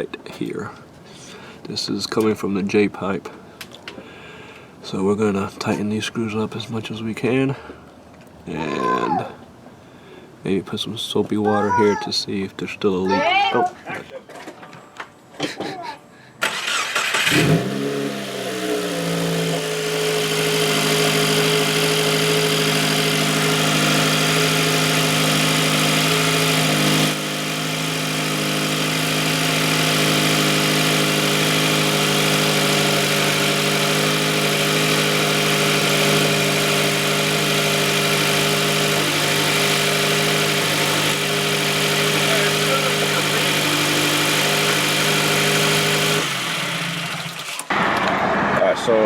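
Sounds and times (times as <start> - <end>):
car engine starting and idling: 16.4 - 49.0.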